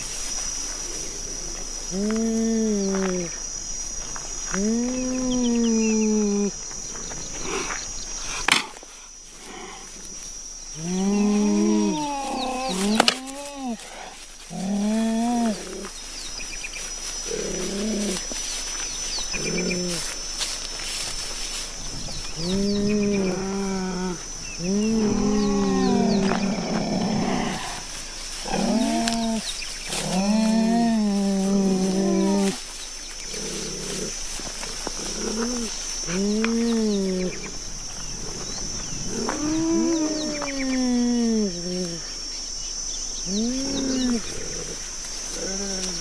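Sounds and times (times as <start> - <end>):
big cat calls: 10.7 - 15.9, 19.3 - 20.2, 22.3 - 32.6, 39.0 - 42.1.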